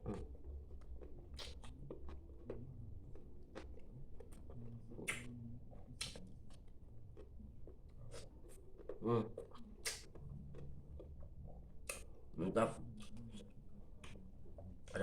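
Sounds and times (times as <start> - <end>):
person chewing food: 0.0 - 15.0
wet mouth clicks: 1.3 - 2.6, 5.0 - 5.4, 6.0 - 6.2, 9.3 - 10.7, 11.8 - 12.1.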